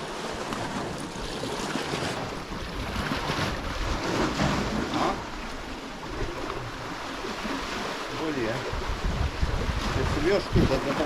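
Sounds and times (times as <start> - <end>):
sea waves washing ashore: 0.0 - 11.0
wind buffeting microphone: 8.2 - 11.0.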